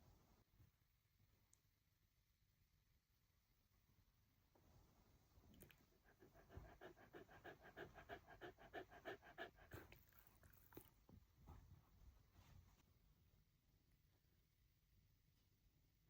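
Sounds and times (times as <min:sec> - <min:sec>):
dog panting: 0:05.8 - 0:10.9.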